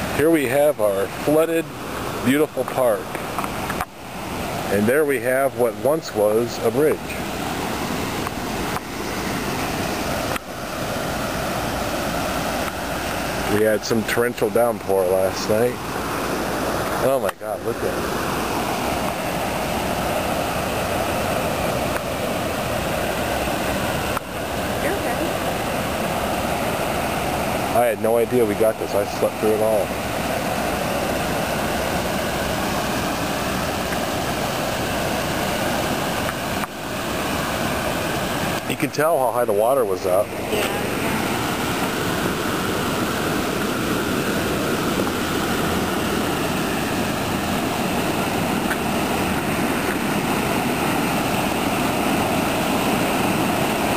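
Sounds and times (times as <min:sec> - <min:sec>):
floodwater rushing: 0:00.0 - 0:53.9.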